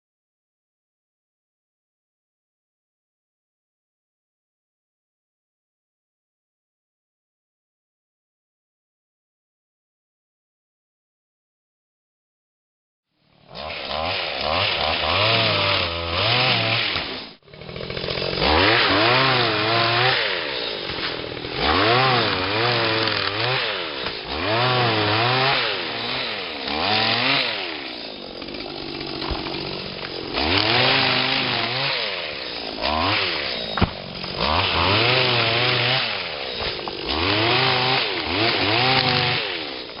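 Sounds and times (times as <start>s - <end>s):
small engine revving: 13.3s - 40.0s.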